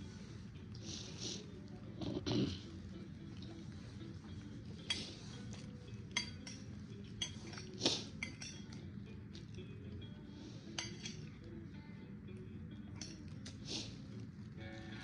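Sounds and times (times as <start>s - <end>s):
low steady hum: 0.0s - 15.0s
cutlery and dishes clinking: 4.7s - 9.5s, 10.6s - 11.5s, 12.9s - 13.6s.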